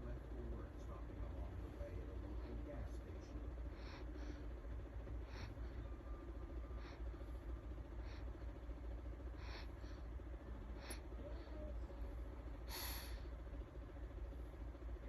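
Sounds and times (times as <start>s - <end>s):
faint low hum: 0.0s - 15.0s
breathy gasping: 3.6s - 6.0s, 12.6s - 13.4s.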